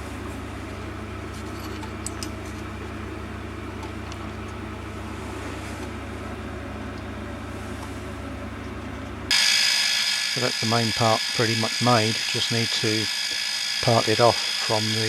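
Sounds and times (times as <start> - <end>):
milling machine cutting metal: 9.3 - 15.0.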